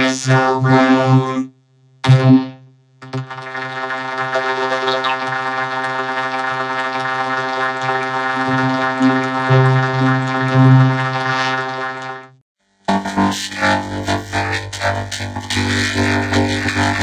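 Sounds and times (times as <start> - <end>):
vocoder buzzing drone: 0.0 - 12.3, 12.9 - 17.0.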